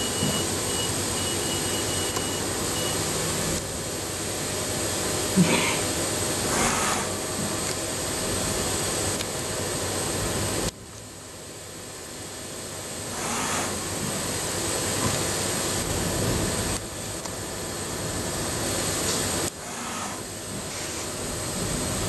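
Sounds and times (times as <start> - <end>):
machine shop rumble: 0.0 - 22.0.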